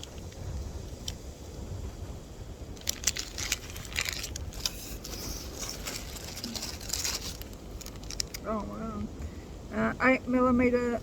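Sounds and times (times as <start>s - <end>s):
sharp irregular crackles: 2.7s - 8.6s
plastic packaging crinkling: 2.8s - 8.5s.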